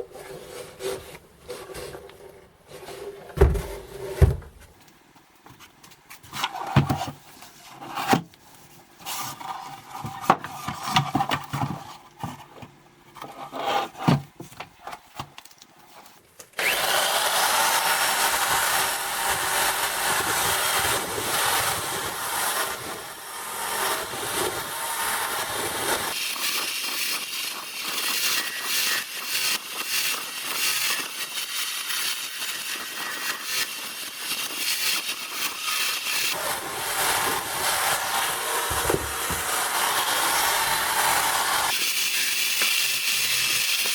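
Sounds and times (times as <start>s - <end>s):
wood knocking and clunking: 3.3s - 4.8s, 38.6s - 39.7s
tool rasping on wood: 16.6s - 43.9s.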